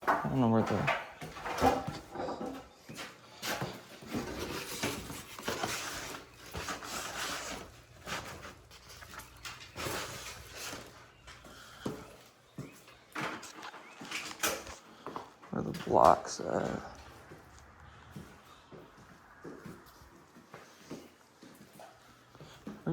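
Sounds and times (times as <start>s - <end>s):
objects knocking and scraping: 0.0s - 12.1s.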